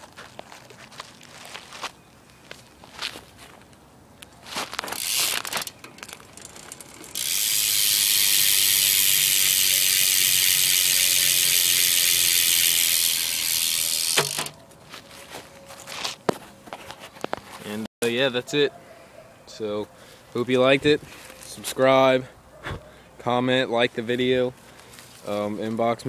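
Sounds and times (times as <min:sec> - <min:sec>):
bicycle freewheel ratchet buzzing: 0:05.0 - 0:14.6.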